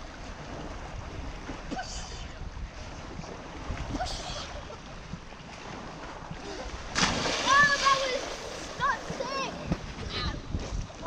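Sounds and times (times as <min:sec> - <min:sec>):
water lapping: 0:00.0 - 0:11.0
wind rumbling on microphone: 0:00.0 - 0:11.0
hissy washes of water: 0:05.4 - 0:10.2.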